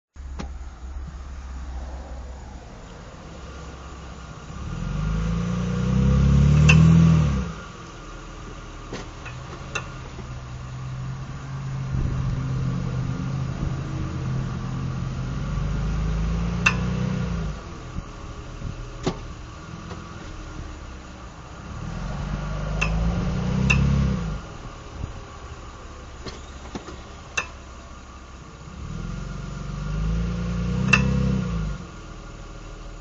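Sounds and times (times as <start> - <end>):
car engine accelerating: 0.2 - 33.0
sharp clicks from axle: 0.3 - 1.2, 5.8 - 8.0, 8.8 - 10.4, 16.1 - 17.2, 18.9 - 20.6, 22.2 - 24.3, 26.2 - 27.8, 30.6 - 31.5.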